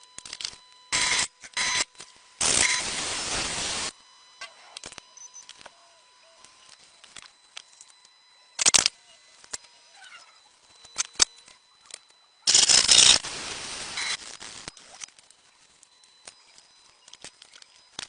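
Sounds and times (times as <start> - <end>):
pressurised spray hissing: 2.4 - 3.9, 12.5 - 14.2.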